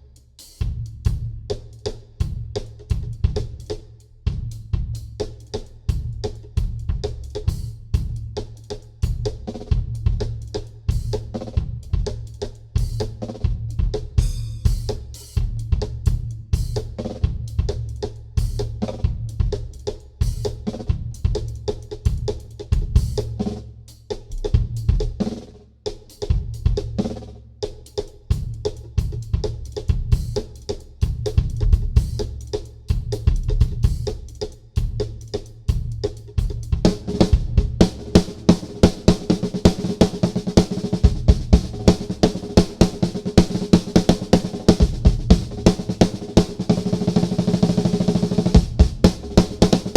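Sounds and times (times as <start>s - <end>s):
drum kit fills: 9.0s - 17.7s, 28.0s - 49.9s.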